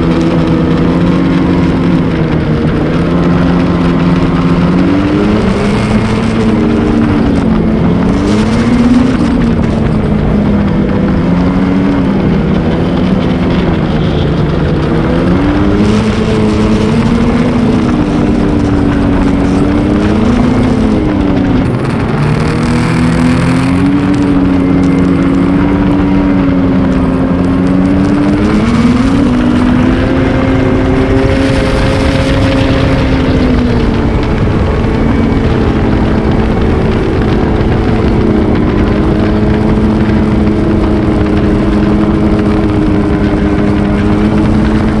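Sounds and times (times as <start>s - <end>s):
snowmobile engine revving: 0.0s - 45.0s
steady rushing noise: 0.0s - 45.0s.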